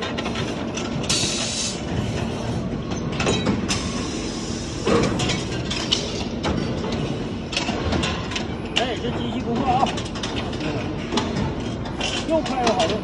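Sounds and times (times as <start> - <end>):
machine clattering: 4.8 - 13.0.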